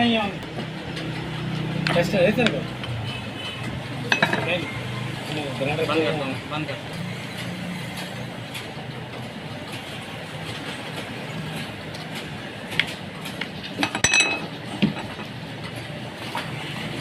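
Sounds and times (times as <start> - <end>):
steady background noise: 0.0 - 17.0
metallic clinks and taps: 4.1 - 4.6, 13.8 - 15.3.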